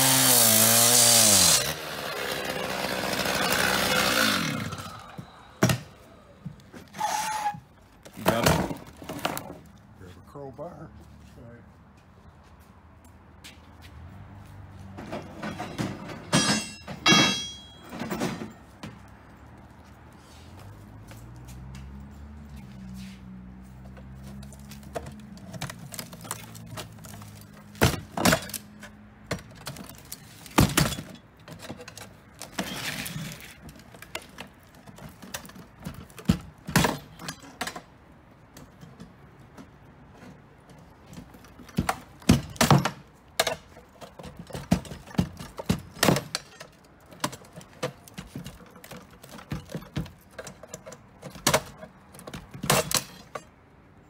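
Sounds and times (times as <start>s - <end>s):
metal scraping and rattling: 14.9s - 18.8s
crowbar striking metal housing: 16.3s - 18.3s.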